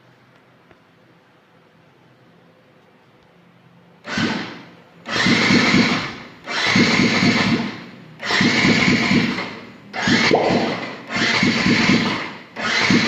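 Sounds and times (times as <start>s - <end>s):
electric starter cranking engine: 4.0s - 13.0s.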